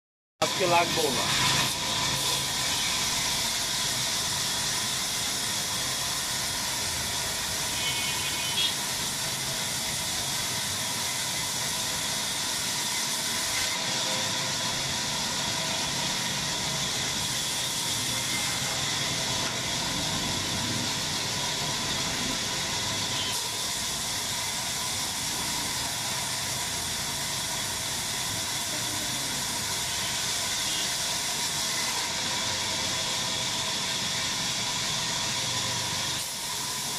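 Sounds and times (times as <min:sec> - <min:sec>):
sawmill saw running: 0:00.4 - 0:36.9.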